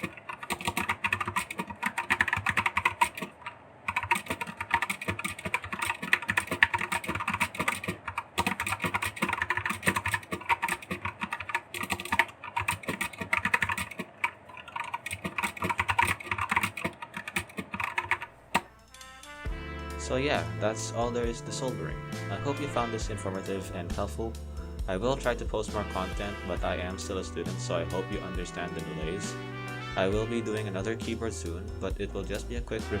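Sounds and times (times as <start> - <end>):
mechanical keyboard typing: 0.0 - 19.0.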